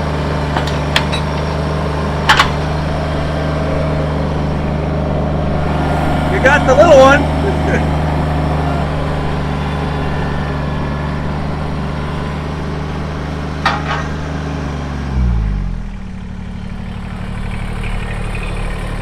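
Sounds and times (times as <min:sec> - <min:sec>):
tractor diesel engine running: 0:00.0 - 0:19.0.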